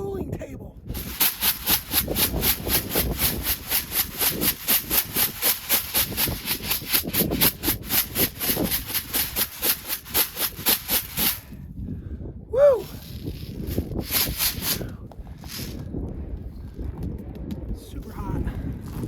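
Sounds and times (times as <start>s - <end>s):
coffee beans rattling in tray: 0.9s - 11.5s, 12.8s - 15.8s.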